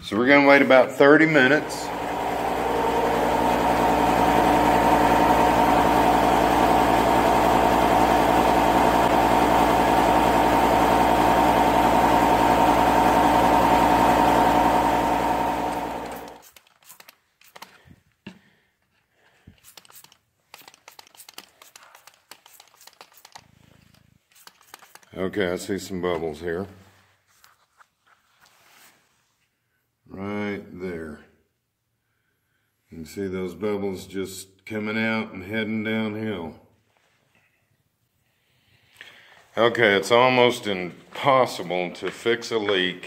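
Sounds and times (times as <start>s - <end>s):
engine humming: 1.4s - 16.4s.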